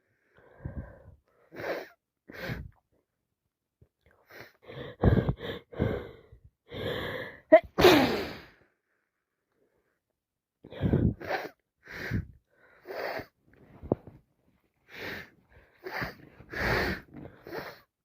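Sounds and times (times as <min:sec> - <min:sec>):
woman gasping for breath: 0:04.2 - 0:08.6, 0:10.7 - 0:13.3, 0:14.9 - 0:17.9
woman sneezing: 0:07.5 - 0:08.4.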